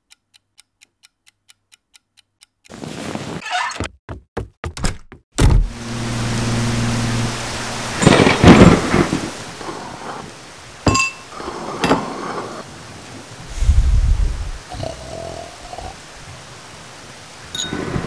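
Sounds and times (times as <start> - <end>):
low steady hum: 5.6 - 9.6
thunder rumble: 5.6 - 10.4, 13.4 - 14.7
rain falling: 5.7 - 18.0.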